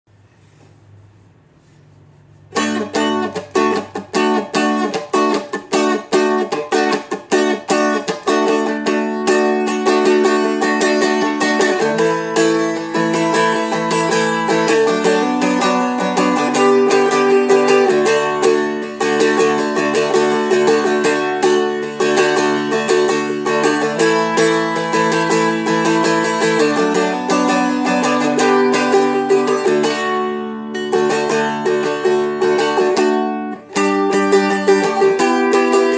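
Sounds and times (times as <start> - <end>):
dulcimer strummed: 2.5 - 35.9.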